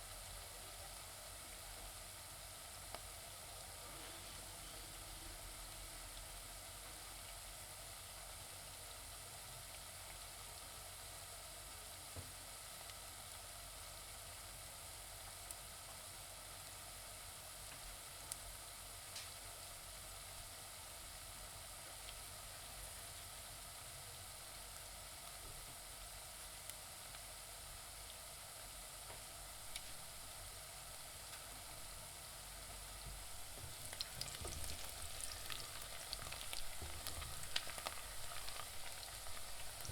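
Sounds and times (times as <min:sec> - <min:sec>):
onions sizzling in a pan: 0:00.0 - 0:39.9.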